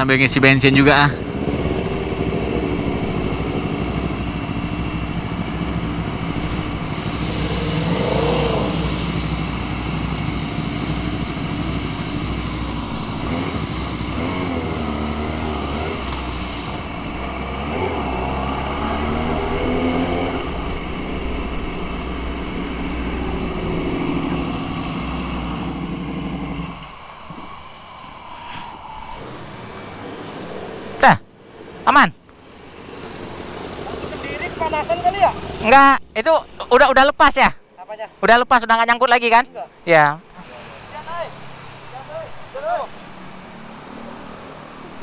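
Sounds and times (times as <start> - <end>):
passing traffic: 0.0 - 45.0
motorcycle engine running: 0.6 - 27.3.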